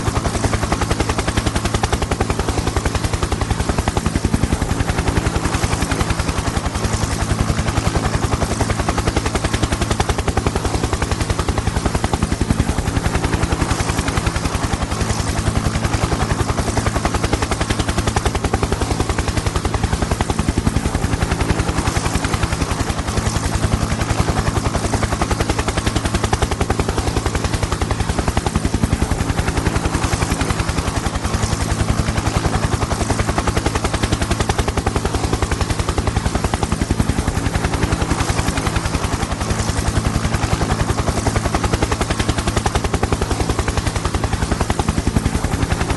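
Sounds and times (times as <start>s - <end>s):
helicopter rotor chopping: 0.0s - 45.9s.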